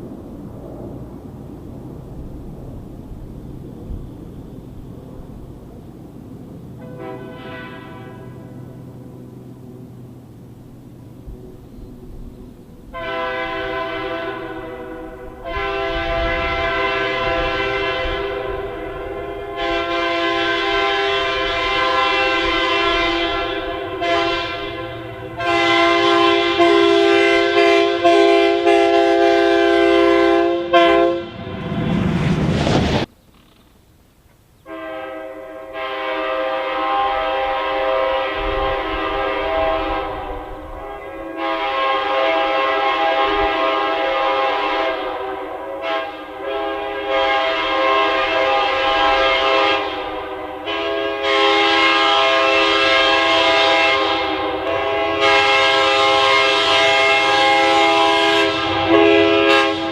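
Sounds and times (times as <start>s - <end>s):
locomotive air horn blasts: 6.8s - 8.9s, 12.9s - 31.7s, 34.6s - 59.9s
rush of noise: 31.2s - 33.5s.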